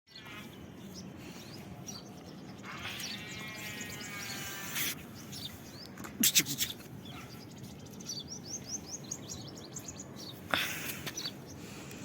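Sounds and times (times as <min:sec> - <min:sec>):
birds chirping: 0:00.1 - 0:12.0
outdoor background noise: 0:00.1 - 0:12.0
wavering buzzing sound: 0:02.6 - 0:05.0.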